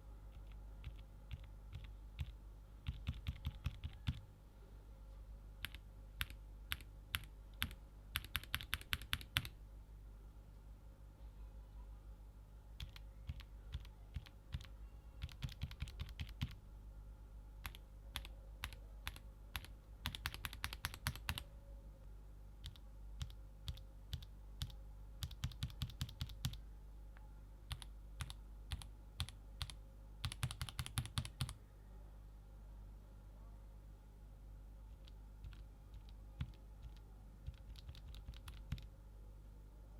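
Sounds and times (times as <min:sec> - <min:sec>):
mechanical keyboard typing: 0:00.3 - 0:04.3, 0:05.6 - 0:09.5, 0:12.8 - 0:16.6, 0:17.6 - 0:21.4, 0:22.6 - 0:26.6, 0:27.7 - 0:31.6, 0:34.9 - 0:38.9.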